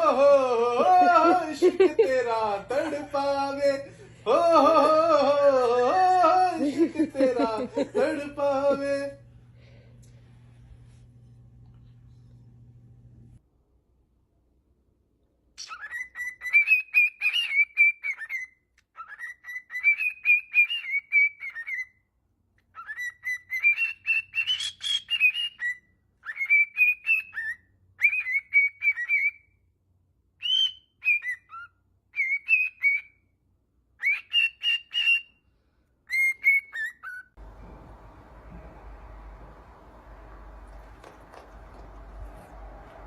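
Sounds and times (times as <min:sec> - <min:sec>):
parrot whistling: 0:15.6 - 0:22.0, 0:22.7 - 0:29.6, 0:30.4 - 0:33.2, 0:34.0 - 0:35.4, 0:36.1 - 0:37.4.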